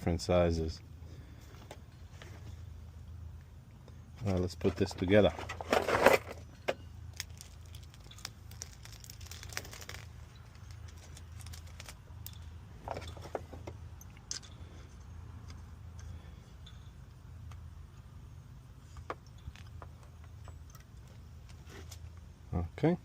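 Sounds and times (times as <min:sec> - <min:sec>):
steady low hum: 0:00.0 - 0:23.0
plastic packaging rustling: 0:07.1 - 0:13.6.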